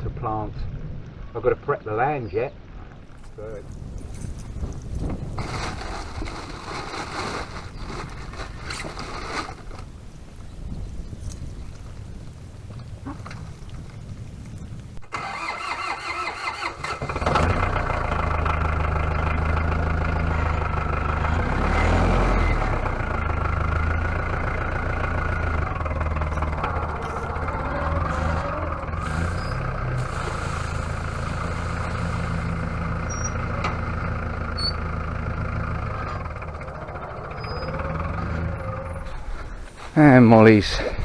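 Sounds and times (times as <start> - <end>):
tractor engine cranking and idling: 3.0 - 41.0.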